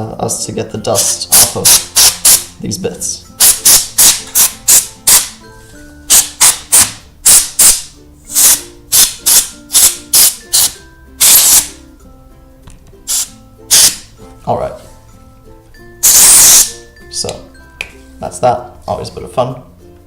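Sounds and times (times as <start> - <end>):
faint background music: 0.0 - 20.0
compressed air duster hissing: 1.0 - 2.5, 3.4 - 5.4, 6.1 - 11.8, 13.1 - 14.1, 16.0 - 16.8.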